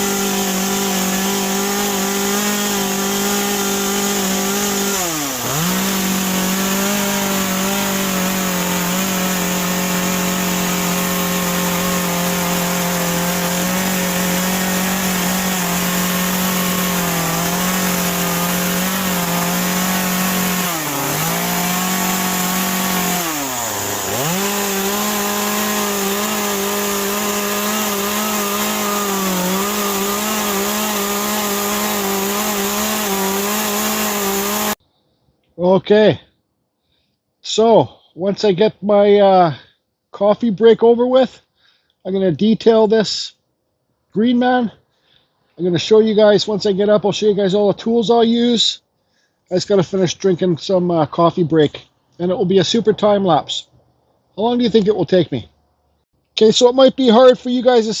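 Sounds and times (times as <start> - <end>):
chainsaw cutting wood: 0.0 - 34.8.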